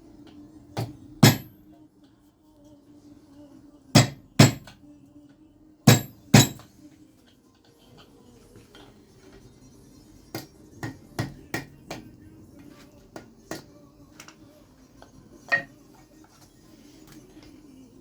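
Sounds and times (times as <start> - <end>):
mallet striking chisel into wood: 0.8 - 1.5, 4.0 - 4.8, 5.9 - 6.6.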